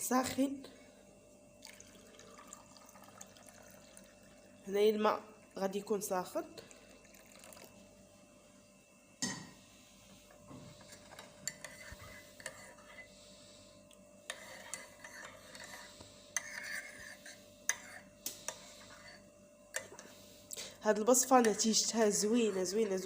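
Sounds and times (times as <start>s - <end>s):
spoon clinking and scraping glass: 10.9s - 13.1s.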